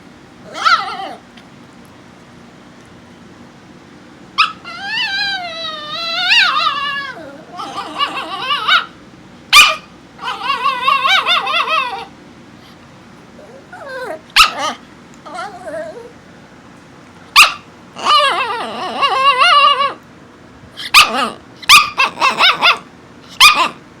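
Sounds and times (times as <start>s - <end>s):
dog whining and howling: 0.4s - 1.4s, 4.4s - 9.0s, 9.6s - 12.1s, 13.4s - 16.2s, 17.4s - 20.0s, 20.8s - 23.8s
dog yipping: 0.5s - 1.2s, 4.4s - 12.1s, 13.4s - 16.1s, 17.4s - 20.0s, 20.8s - 23.8s
dog barking: 9.6s - 12.1s, 14.0s - 14.8s, 17.4s - 17.7s, 20.9s - 22.8s, 23.4s - 23.8s.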